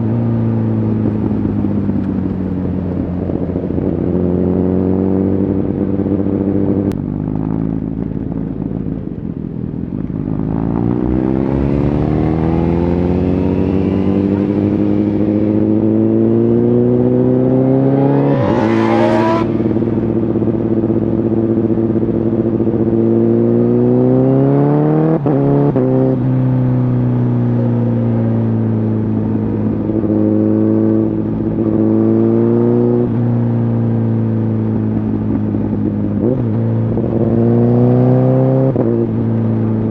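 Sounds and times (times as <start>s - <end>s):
motorcycle engine revving: 10.4s - 28.6s.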